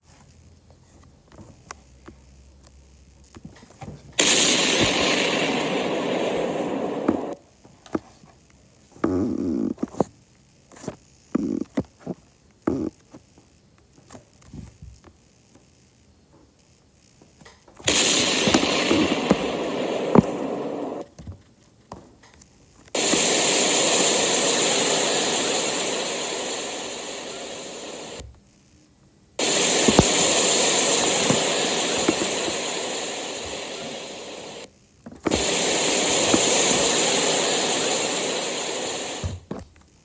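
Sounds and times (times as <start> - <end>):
impact rumble with rushing hiss: 4.2 - 7.4, 17.9 - 21.1, 29.4 - 34.7, 35.3 - 39.5.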